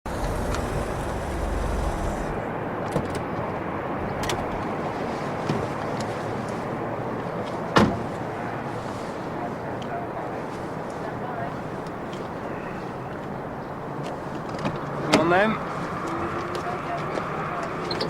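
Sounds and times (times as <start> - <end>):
car noise: 0.0 - 18.0
low rumble: 0.1 - 2.6.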